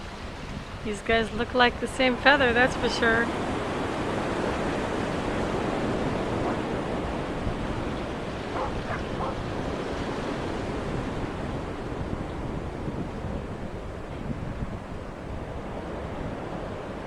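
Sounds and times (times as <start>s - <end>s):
ocean surf washing: 0.0s - 17.0s
wind buffeting microphone: 0.0s - 17.0s.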